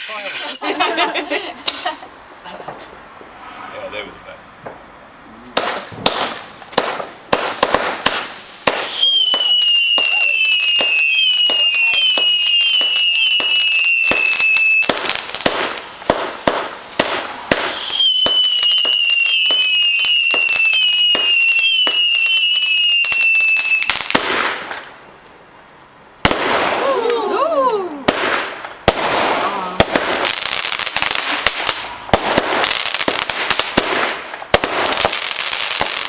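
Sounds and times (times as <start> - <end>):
warbling firework whistle: 0.0 - 1.1, 8.1 - 15.8, 17.3 - 24.0
fireworks crackling bangs: 0.0 - 3.4, 5.5 - 25.5, 26.1 - 36.0.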